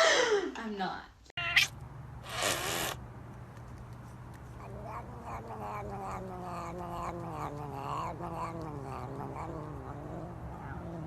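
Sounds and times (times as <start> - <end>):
cat yowling: 1.4 - 1.7, 4.6 - 11.0
steady low hum: 1.6 - 11.0.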